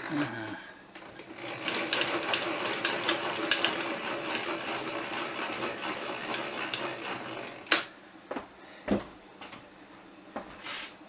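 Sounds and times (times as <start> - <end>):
milling machine gearing whirring: 1.0 - 7.9.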